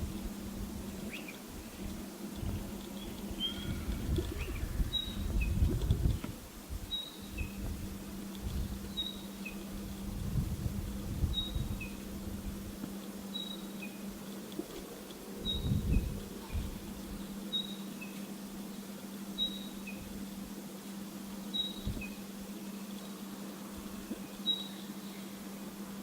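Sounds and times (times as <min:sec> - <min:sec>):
low background rumble and hum: 0:00.0 - 0:26.0.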